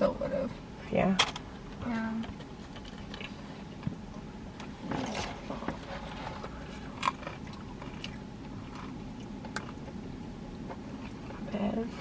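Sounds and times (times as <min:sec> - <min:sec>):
person chewing food: 0:04.9 - 0:11.4.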